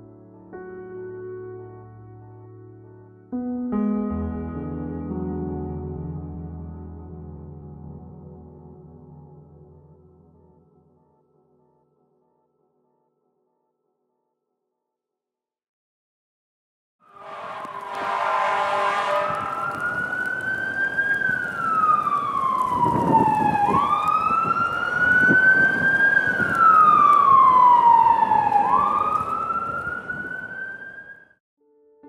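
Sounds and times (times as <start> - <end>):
horn blare: 17.0 - 20.4
street traffic: 17.1 - 31.2
emergency vehicle siren wailing: 17.1 - 31.4.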